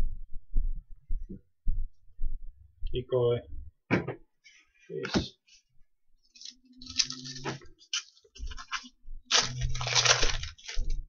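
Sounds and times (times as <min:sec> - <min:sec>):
cards crinkling and rustling: 0:06.3 - 0:11.0.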